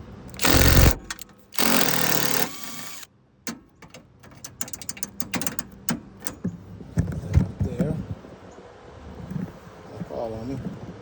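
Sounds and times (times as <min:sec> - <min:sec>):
light clicks and rattles: 0:00.3 - 0:07.9
impact driver hammering: 0:00.4 - 0:03.1.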